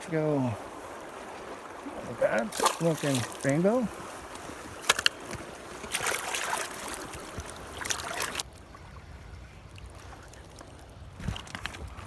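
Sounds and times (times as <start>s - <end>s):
river rushing: 0.0s - 8.5s
water splashing close by: 0.0s - 12.0s.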